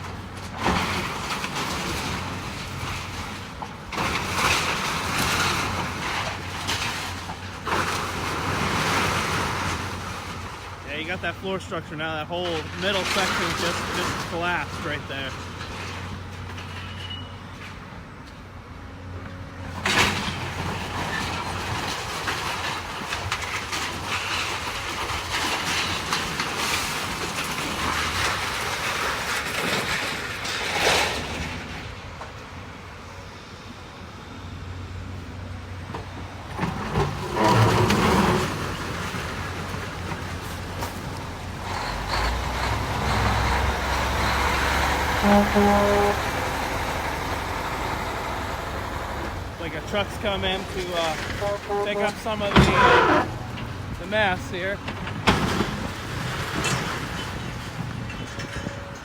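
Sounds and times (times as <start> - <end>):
debris breaking and falling: 0.0 - 11.2, 12.3 - 17.0, 19.7 - 32.0, 36.4 - 48.6, 49.2 - 59.0
excavator diesel engine running: 31.4 - 59.0.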